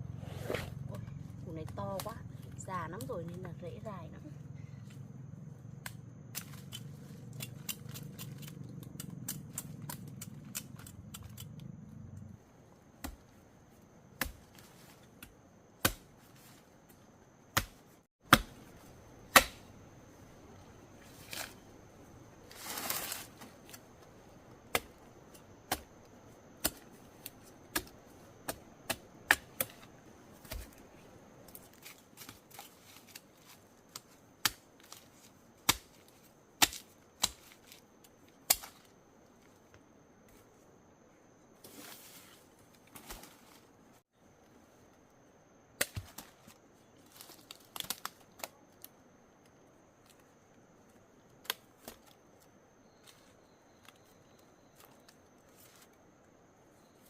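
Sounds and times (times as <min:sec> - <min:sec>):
digging tool striking soil: 0:17.5 - 0:18.7, 0:19.3 - 0:19.7, 0:26.6 - 0:30.8, 0:36.6 - 0:37.8, 0:38.5 - 0:38.9
scraping rustle: 0:22.4 - 0:23.8.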